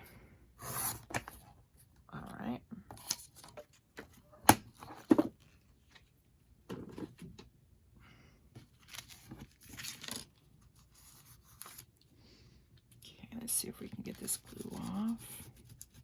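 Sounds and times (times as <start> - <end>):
paper rustling and scraping: 8.7 - 11.9, 14.0 - 16.0.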